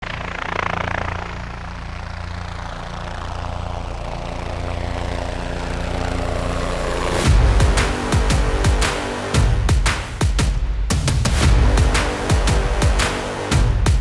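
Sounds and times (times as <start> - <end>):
helicopter engine drone: 0.0 - 8.4
helicopter rotor beating: 0.0 - 10.2, 11.4 - 14.0.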